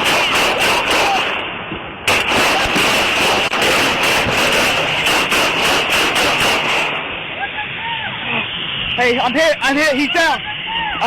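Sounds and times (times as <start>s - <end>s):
rapid gunshots: 0.0s - 1.5s, 2.1s - 7.1s.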